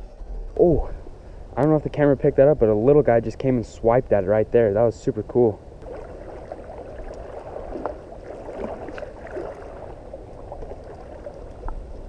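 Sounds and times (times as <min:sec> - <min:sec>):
river water rushing and gurgling: 0:05.7 - 0:12.0.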